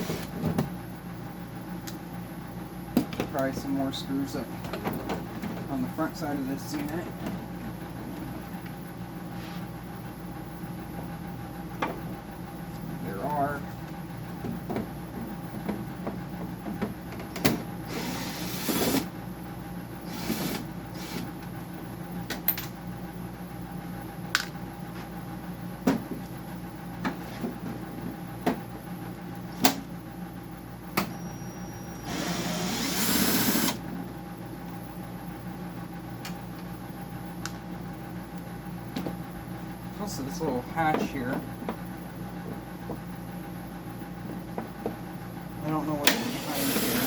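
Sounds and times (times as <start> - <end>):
steady machine hum: 0.0 - 47.0.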